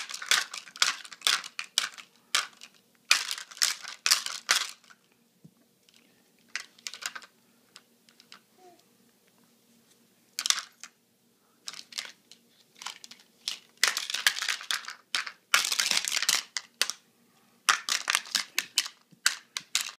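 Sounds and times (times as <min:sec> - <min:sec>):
crinkling and rustling: 0:00.0 - 0:05.2, 0:05.8 - 0:08.4, 0:11.6 - 0:17.0, 0:17.6 - 0:20.0.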